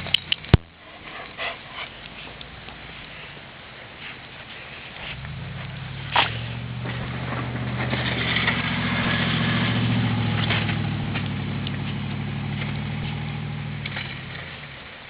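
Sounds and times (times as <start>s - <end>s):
vehicle engine running: 5.0s - 15.0s.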